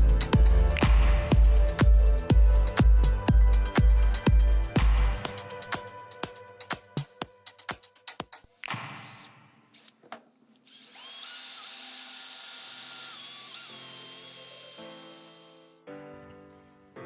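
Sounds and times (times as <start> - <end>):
background music: 0.0 - 9.0
electric drill motor whining: 8.4 - 10.0, 10.6 - 15.8.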